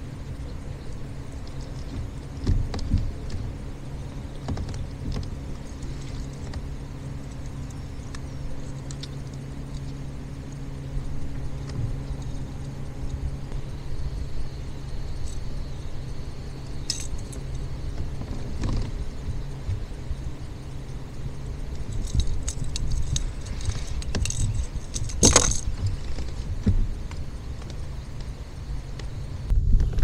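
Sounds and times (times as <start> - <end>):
low motor hum: 0.0 - 30.0
knocks and clatters: 21.9 - 27.8.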